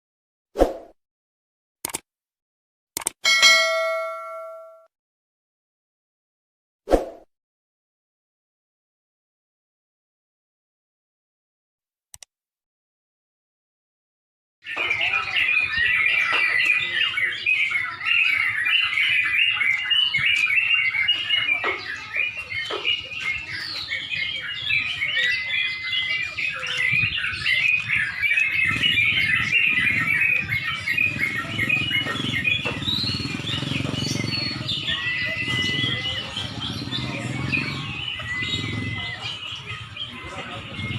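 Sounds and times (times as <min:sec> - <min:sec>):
bulbuls singing: 0:14.6 - 0:40.9.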